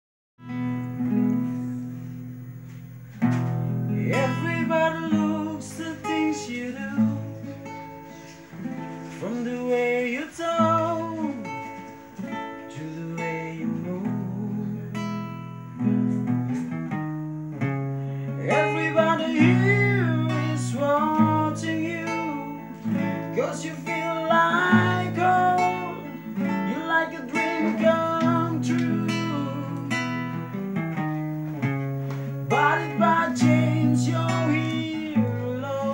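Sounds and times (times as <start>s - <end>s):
acoustic guitar strumming: 0.4s - 35.9s
person singing: 3.7s - 15.5s, 18.1s - 30.6s, 32.1s - 35.9s.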